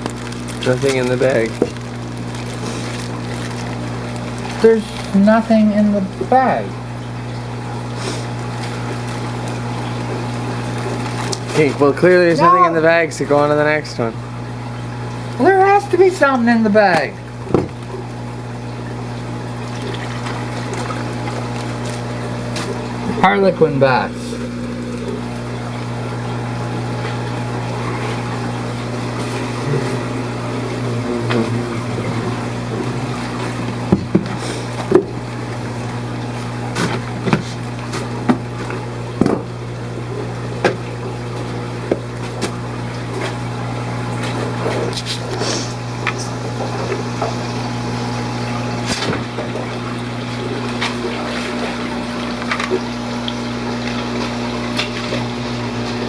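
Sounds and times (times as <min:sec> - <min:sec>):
plastic bags clicking and rustling: 0:00.0 - 0:05.2
aquarium pumps humming: 0:00.0 - 0:56.0
water running: 0:00.0 - 0:56.0.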